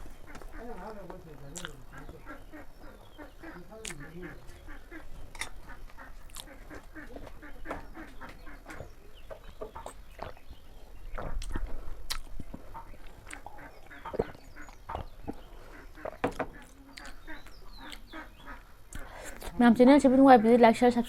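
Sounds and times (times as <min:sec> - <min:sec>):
person chewing wetly: 0:01.5 - 0:02.0, 0:03.8 - 0:04.1, 0:05.2 - 0:06.8, 0:09.8 - 0:18.2.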